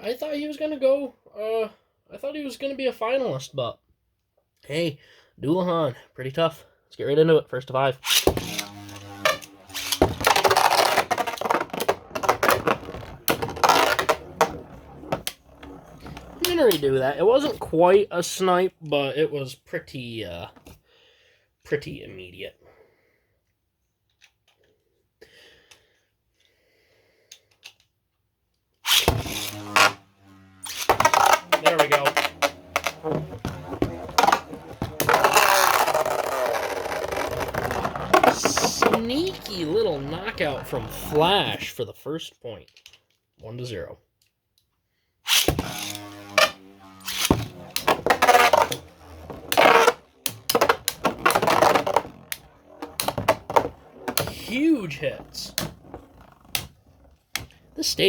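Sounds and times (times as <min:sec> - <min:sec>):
spinning tops whirring: 0:08.1 - 0:17.5, 0:28.9 - 0:41.3, 0:45.3 - 0:58.0
spinning tops humming: 0:45.6 - 0:55.5.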